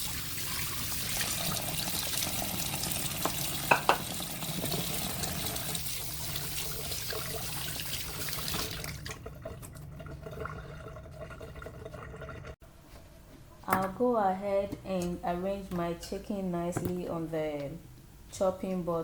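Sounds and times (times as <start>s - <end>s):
kitchen tap running: 0.0s - 12.6s.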